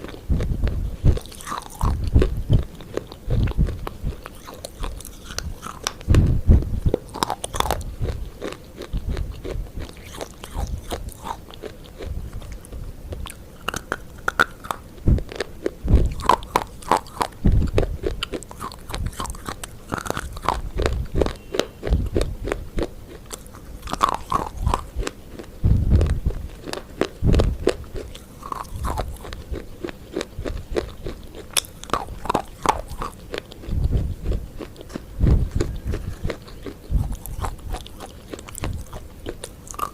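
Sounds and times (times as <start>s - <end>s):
crunchy chewing: 0.0s - 39.9s
dull low thuds: 0.3s - 1.2s, 3.3s - 4.2s, 6.1s - 7.0s, 15.0s - 16.2s, 17.4s - 18.1s, 25.6s - 26.5s, 27.2s - 27.8s, 33.7s - 34.4s, 35.2s - 36.1s.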